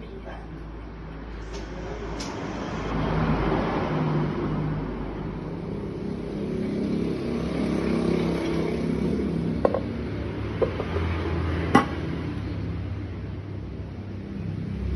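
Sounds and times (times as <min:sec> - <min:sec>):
vehicle engine running: 0:05.3 - 0:14.2.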